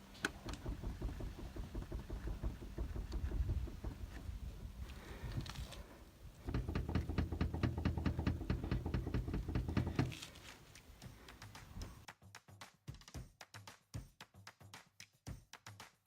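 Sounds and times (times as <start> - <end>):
tailgate creaking and clicking: 0.0 - 5.6, 6.4 - 10.4
low driving rumble: 0.0 - 10.3.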